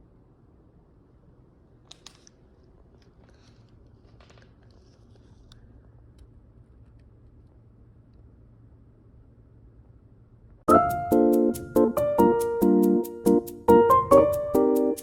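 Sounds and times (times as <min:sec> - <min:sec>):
faint clicks and rustling: 0:01.8 - 0:08.3.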